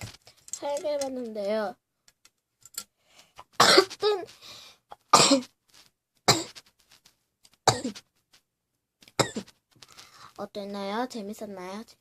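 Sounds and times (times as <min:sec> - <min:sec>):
girl coughing: 0:03.6 - 0:04.3, 0:05.1 - 0:05.5, 0:06.3 - 0:06.6, 0:07.7 - 0:08.0, 0:09.2 - 0:09.5.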